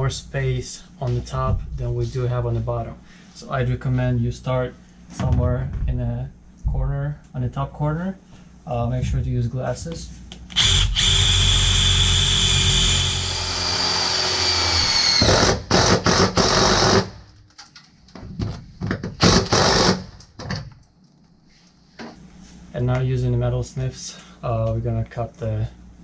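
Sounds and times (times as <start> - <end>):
power drill boring through sheet metal: 10.6 - 17.2, 19.2 - 20.1.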